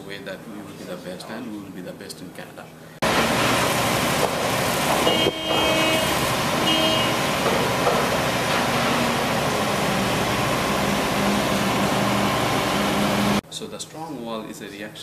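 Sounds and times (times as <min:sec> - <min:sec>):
concrete pump truck running: 0:03.0 - 0:13.4.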